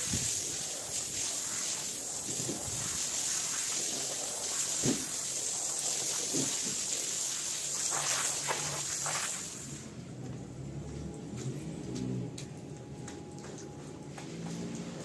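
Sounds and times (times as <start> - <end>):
water spraying onto rug: 0.0 - 9.9, 13.1 - 15.0.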